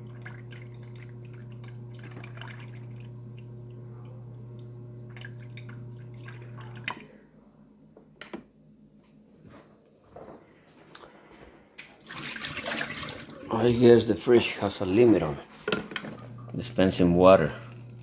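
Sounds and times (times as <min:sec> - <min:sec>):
water dispenser humming: 0:00.0 - 0:07.3, 0:12.0 - 0:15.3, 0:16.0 - 0:18.0.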